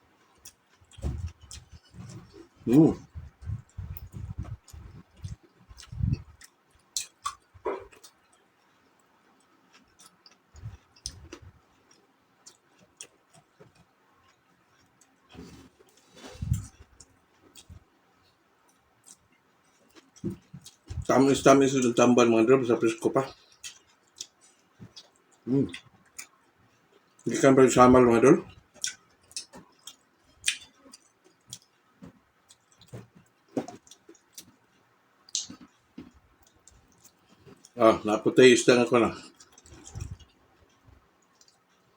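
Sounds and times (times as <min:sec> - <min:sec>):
person chewing: 0:00.2 - 0:17.8, 0:18.6 - 0:21.1, 0:23.4 - 0:27.2, 0:28.5 - 0:37.8, 0:39.2 - 0:41.9
soft low thumps: 0:00.9 - 0:06.3.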